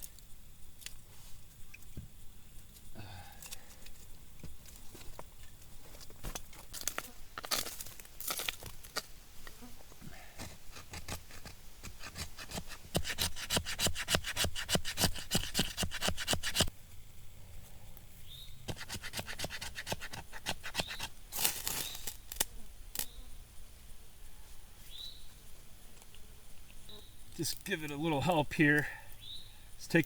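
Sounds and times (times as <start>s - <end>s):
repeated scraping strokes: 10.4s - 16.7s, 18.7s - 22.2s.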